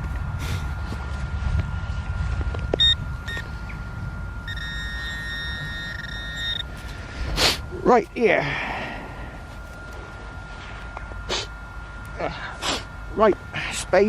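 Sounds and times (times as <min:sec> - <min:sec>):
metal detector beeps and tone: 0:02.7 - 0:07.1.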